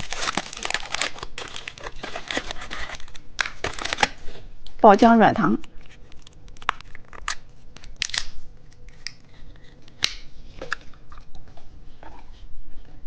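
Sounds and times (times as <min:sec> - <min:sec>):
plastic packaging snaps: 0:00.0 - 0:04.2, 0:05.6 - 0:09.2, 0:09.9 - 0:10.8
plastic packaging crinkling: 0:00.0 - 0:04.4, 0:05.6 - 0:11.4.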